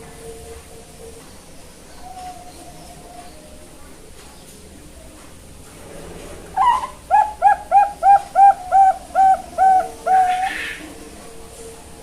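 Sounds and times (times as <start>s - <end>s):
dove cooing: 6.5s - 11.1s.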